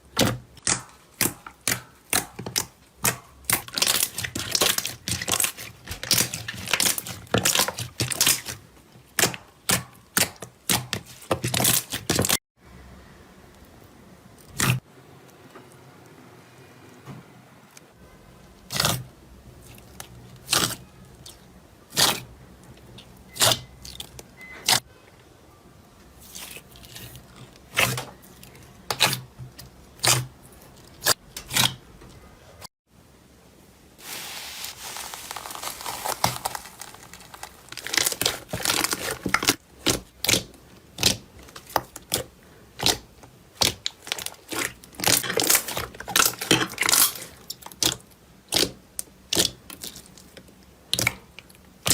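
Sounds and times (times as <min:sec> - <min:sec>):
slime popping and crackling: 0:34.0 - 0:40.4.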